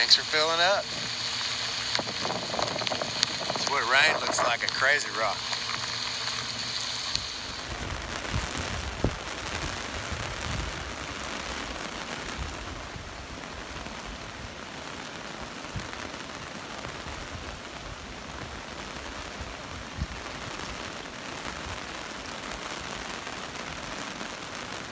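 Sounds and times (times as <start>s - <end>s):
rain falling: 0.0s - 24.9s.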